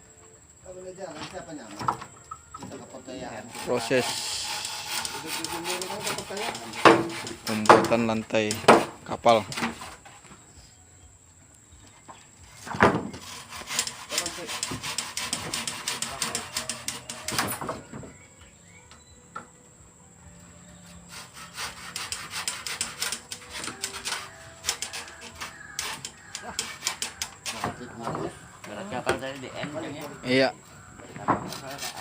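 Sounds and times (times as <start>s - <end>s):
wood rasping strokes: 2.8s - 10.3s, 12.6s - 18.1s, 20.7s - 32.0s
sharp knock: 6.8s - 7.9s.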